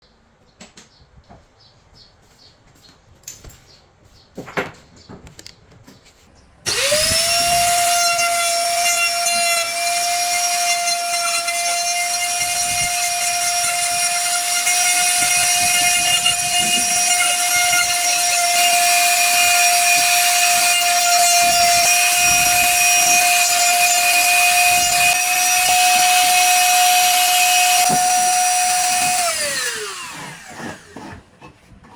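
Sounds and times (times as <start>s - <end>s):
wood router whining: 6.7s - 31.5s.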